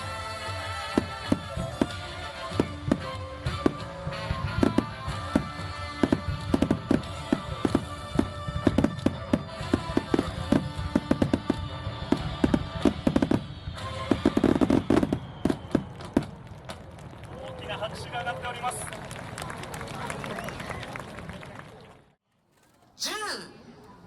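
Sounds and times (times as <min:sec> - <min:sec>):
music playing: 0:00.0 - 0:14.4
fireworks bangs and crackles: 0:00.0 - 0:18.1.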